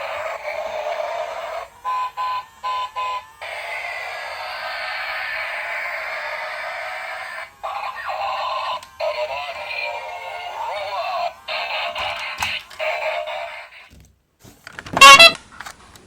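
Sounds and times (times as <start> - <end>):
tinny music with synthetic singing: 7.6 - 13.9.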